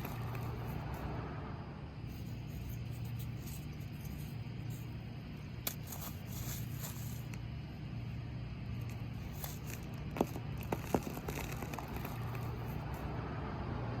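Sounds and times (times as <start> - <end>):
steady low hum: 0.0 - 14.0
cookies crunching in a hand: 8.8 - 13.0.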